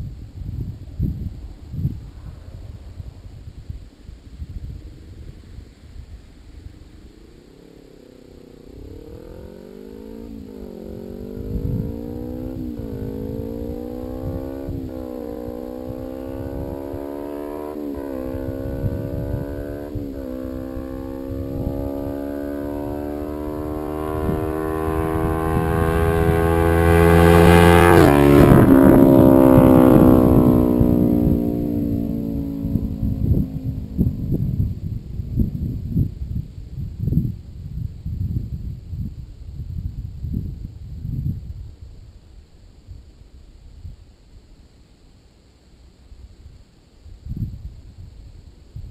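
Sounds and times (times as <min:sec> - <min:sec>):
motorcycle engine accelerating: 0:06.7 - 0:39.0.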